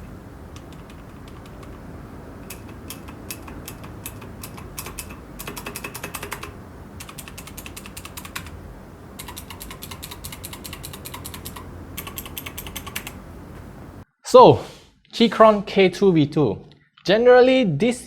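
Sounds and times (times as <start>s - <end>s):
clicky mechanical keyboard typing: 0.0s - 8.6s, 9.2s - 13.2s.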